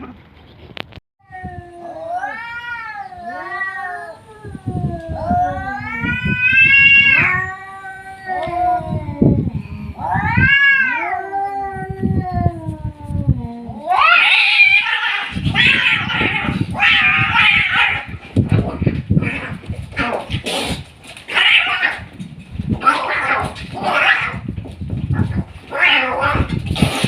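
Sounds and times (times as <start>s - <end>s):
high cat wailing: 1.2s - 20.4s, 21.3s - 22.2s, 22.8s - 27.0s
low cat howl: 1.3s - 18.2s
cat growling: 1.3s - 22.2s, 22.8s - 27.0s.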